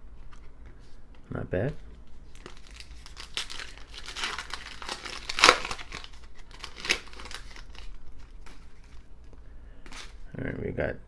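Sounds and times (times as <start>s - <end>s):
foil wrapper tearing and crinkling: 2.3s - 9.0s, 9.9s - 10.2s.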